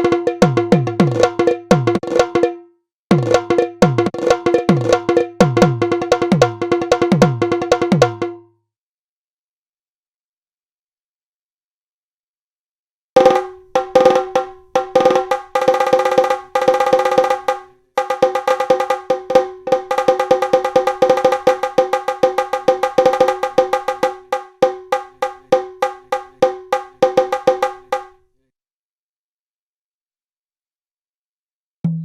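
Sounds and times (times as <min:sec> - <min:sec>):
pitched percussion strokes: 0:13.2 - 0:28.2.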